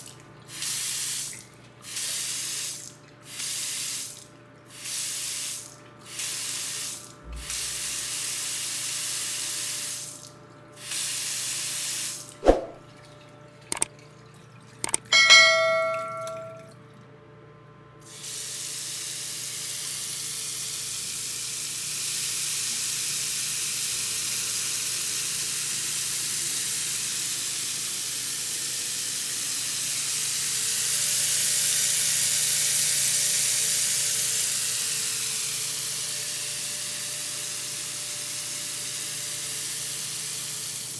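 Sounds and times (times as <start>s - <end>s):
bright ringing tone: 14.9s - 16.7s.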